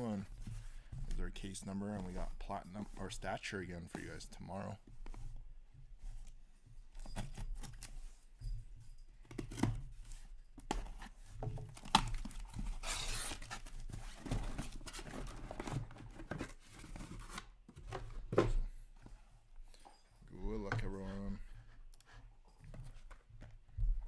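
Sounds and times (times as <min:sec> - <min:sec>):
cardboard clicks and knocks: 0:10.6 - 0:18.8.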